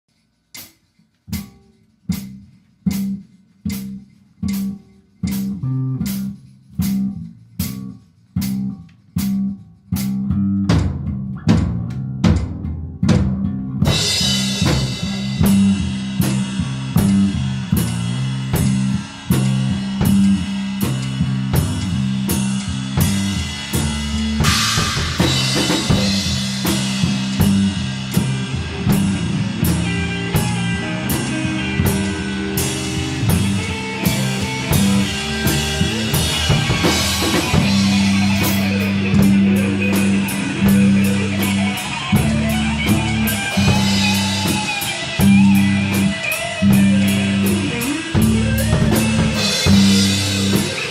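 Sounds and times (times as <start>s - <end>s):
drums: 0.0s - 50.9s
guitar: 1.3s - 50.9s
instrumental rock music: 1.3s - 50.9s
cymbals: 13.8s - 50.9s.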